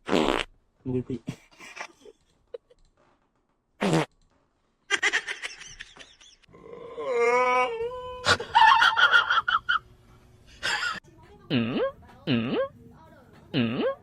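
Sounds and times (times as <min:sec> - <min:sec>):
laughter: 0:01.3 - 0:02.8, 0:04.9 - 0:06.5, 0:08.2 - 0:09.9, 0:10.6 - 0:11.0.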